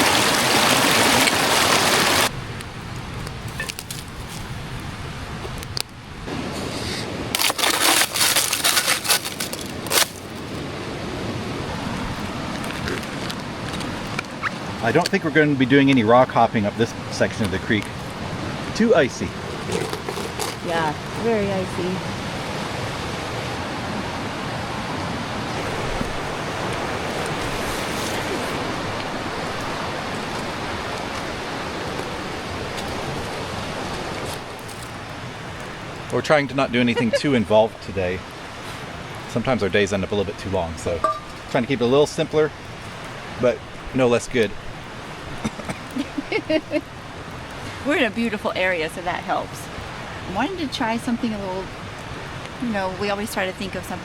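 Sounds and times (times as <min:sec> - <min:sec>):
creek rushing over rocks: 0:00.0 - 0:02.4, 0:06.3 - 0:46.0
crunching and cracking snaps: 0:02.6 - 0:04.8, 0:05.4 - 0:06.0, 0:07.4 - 0:10.6, 0:12.0 - 0:15.2, 0:19.3 - 0:20.7.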